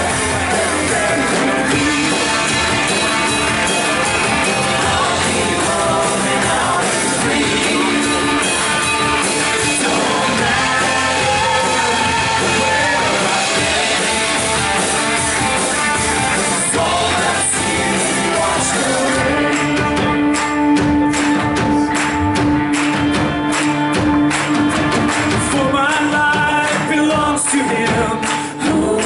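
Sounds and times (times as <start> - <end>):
percussion beat: 0.0 - 29.0
worship band playing: 0.0 - 29.0.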